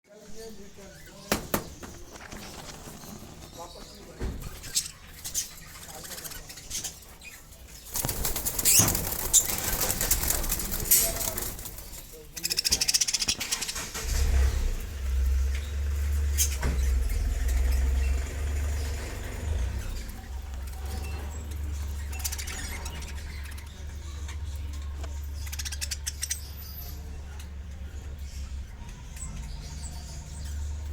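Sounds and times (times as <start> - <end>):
small parrots chirping: 0.8 - 11.6, 12.3 - 13.8, 14.4 - 30.9
parrots flapping wings: 1.3 - 5.4, 7.8 - 14.4.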